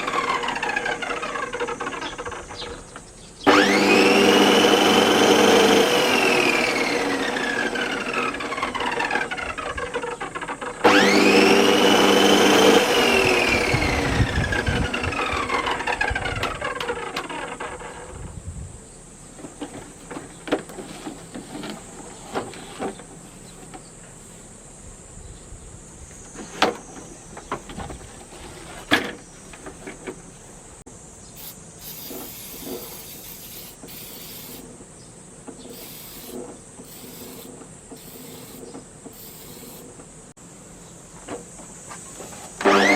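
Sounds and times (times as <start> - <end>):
reel lawn mower whining: 0.0 - 18.4, 19.0 - 24.4, 26.1 - 40.2, 41.3 - 42.9.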